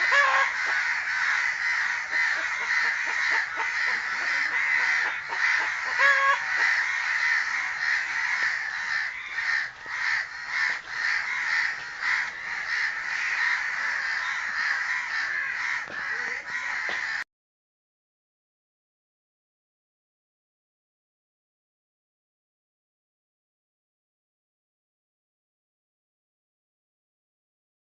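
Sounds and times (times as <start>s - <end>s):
crows cawing: 0.0s - 17.3s.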